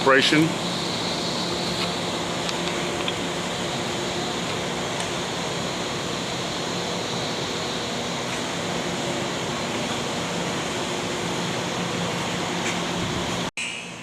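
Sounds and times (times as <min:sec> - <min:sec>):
electric motor and hydraulic pump humming: 0:00.0 - 0:14.0.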